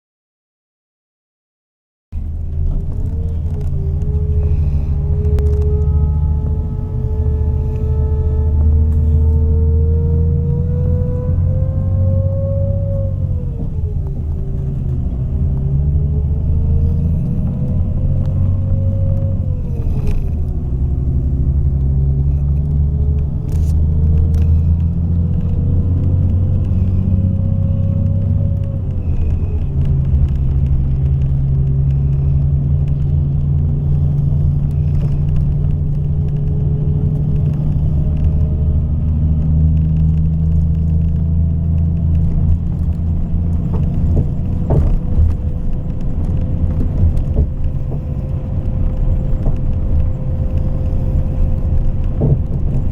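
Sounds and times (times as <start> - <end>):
diesel engine rumbling: 2.1 - 52.9
faint whine: 2.2 - 9.8.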